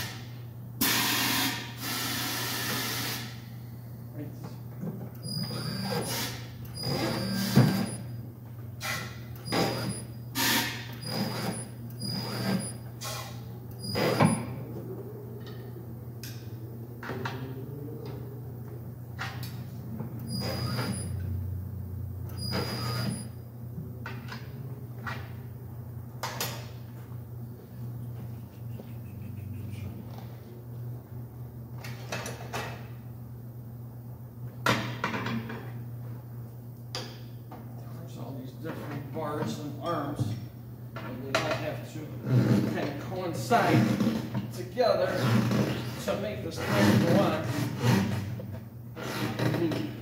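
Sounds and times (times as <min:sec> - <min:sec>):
tire changer machine humming: 0:04.8 - 0:32.2
short mechanical bursts: 0:05.2 - 0:08.1, 0:08.8 - 0:14.4, 0:20.2 - 0:21.2, 0:22.3 - 0:23.3.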